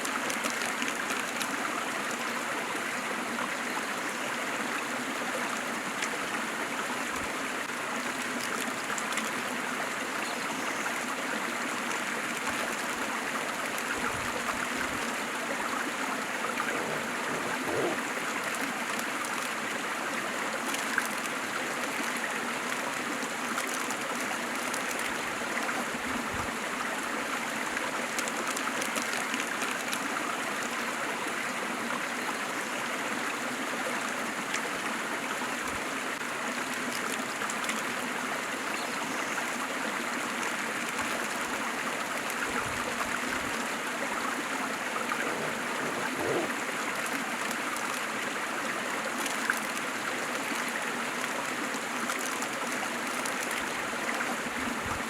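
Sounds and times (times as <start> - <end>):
water rushing and splashing: 10.9 - 32.0, 32.7 - 55.0.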